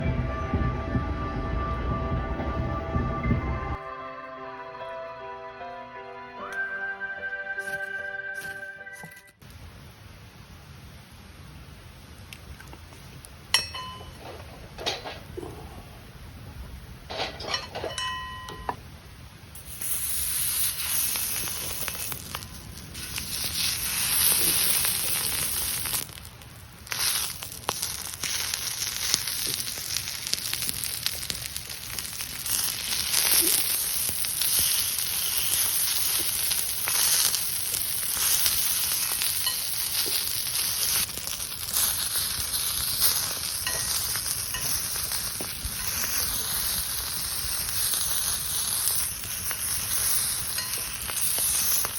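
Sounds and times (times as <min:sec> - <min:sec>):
small metallic clink: 0:13.5 - 0:15.2, 0:17.1 - 0:18.8
food sizzling on a griddle: 0:19.5 - 0:51.9.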